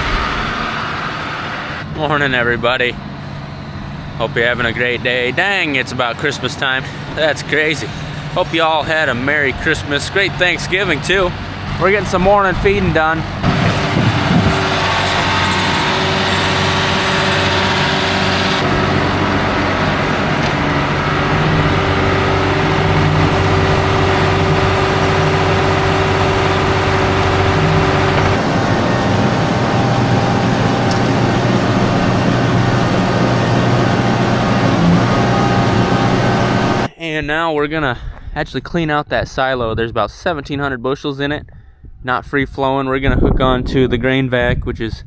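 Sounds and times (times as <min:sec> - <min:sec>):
tractor diesel engine running: 0:00.0 - 0:36.9
steady whine: 0:00.0 - 0:37.3.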